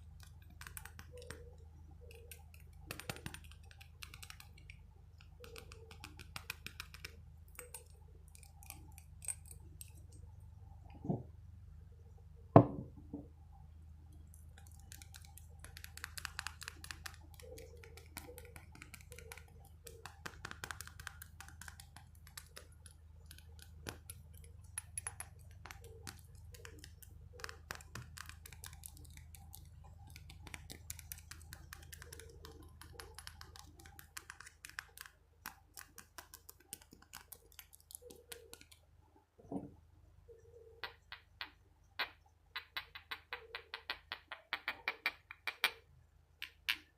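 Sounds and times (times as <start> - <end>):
light tapping and clicking: 0.0 - 10.2, 14.1 - 38.8
faint low hum: 0.0 - 46.9
loud single knock: 12.6 - 12.9.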